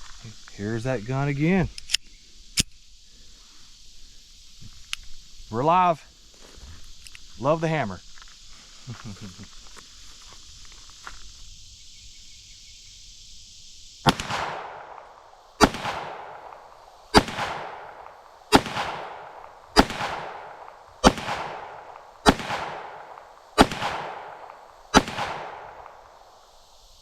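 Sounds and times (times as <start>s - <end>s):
pistol shots with echo: 14.1s - 26.3s.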